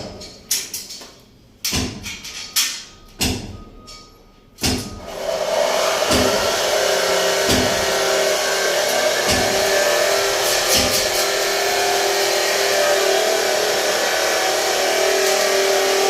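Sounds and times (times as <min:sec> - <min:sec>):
power tool whining: 0:05.0 - 0:16.0.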